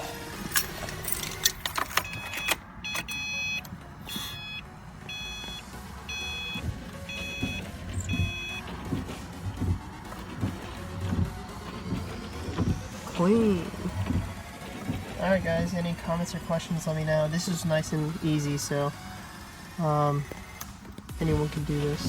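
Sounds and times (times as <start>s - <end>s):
soft low thumps: 5.1s - 16.4s.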